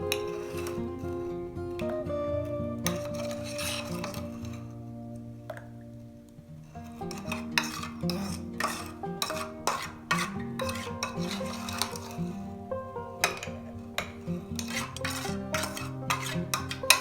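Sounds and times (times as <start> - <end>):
utensil clinking against a dish: 0.0 - 2.0, 2.8 - 4.7, 6.7 - 17.0
soft background music: 0.0 - 17.0.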